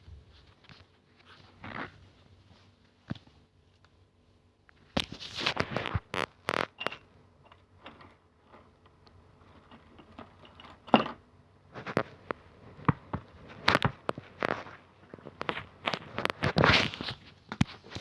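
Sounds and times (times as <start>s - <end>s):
handling rustles and scrapes: 0.0s - 3.9s, 4.8s - 18.0s.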